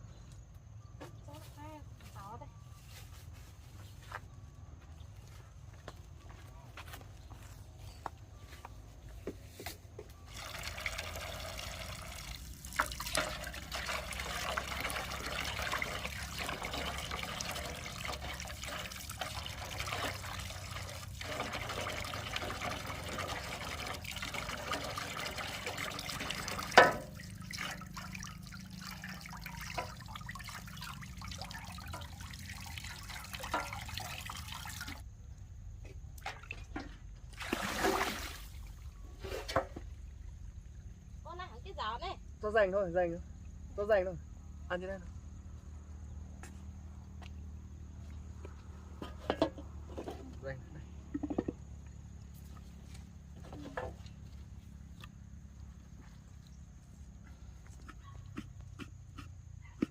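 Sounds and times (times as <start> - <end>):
water trickling and splashing: 10.3 - 35.1, 36.2 - 40.8, 51.1 - 57.9.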